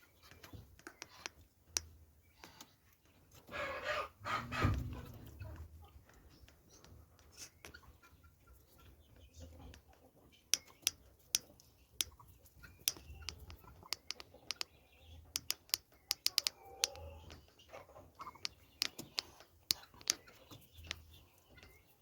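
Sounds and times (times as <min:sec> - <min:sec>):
poultry clucking: 0:00.0 - 0:22.0
sharp irregular taps: 0:00.3 - 0:01.9, 0:12.8 - 0:14.7, 0:15.3 - 0:17.4, 0:18.4 - 0:21.8.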